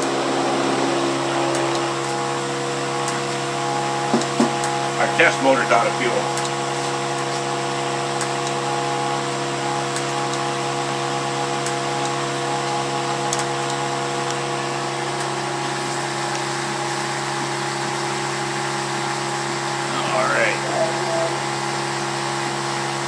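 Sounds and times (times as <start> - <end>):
machine hum with whining tones: 0.0 - 23.0.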